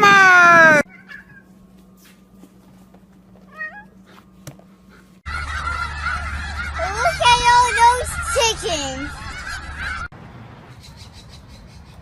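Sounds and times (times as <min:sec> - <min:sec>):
cat meowing: 0:03.5 - 0:03.9
geese honking: 0:05.3 - 0:10.1.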